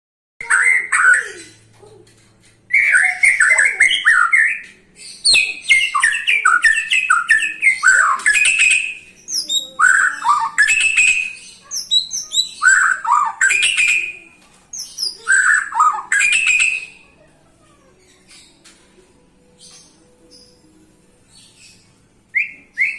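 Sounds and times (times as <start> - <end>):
bird singing whistles: 22.3 - 22.9.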